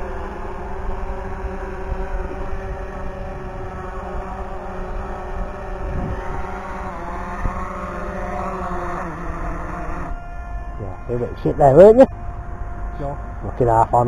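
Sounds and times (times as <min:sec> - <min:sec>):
drone propellers whining: 0:00.0 - 0:14.0
wind rumble on microphone: 0:01.8 - 0:08.1.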